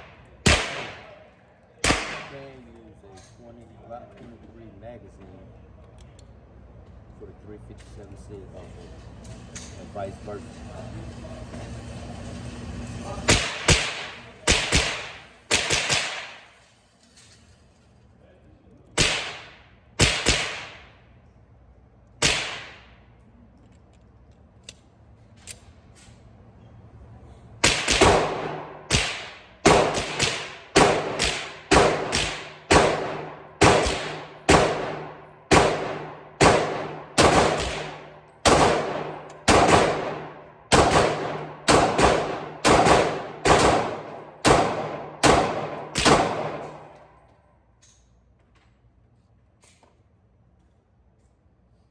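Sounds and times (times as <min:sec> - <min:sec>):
pistol shots with ringing echo: 0:00.0 - 0:01.2, 0:01.8 - 0:02.6, 0:13.3 - 0:16.6, 0:19.0 - 0:21.0, 0:22.2 - 0:23.0, 0:27.6 - 0:47.1.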